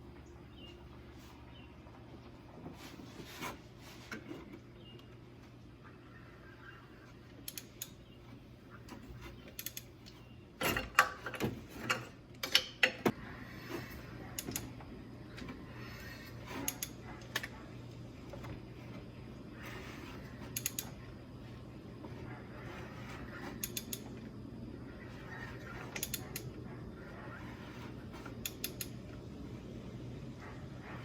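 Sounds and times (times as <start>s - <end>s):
steady low hum: 0.0s - 31.0s
metallic clicks and clanks: 9.5s - 13.2s, 20.5s - 21.0s, 23.6s - 24.1s.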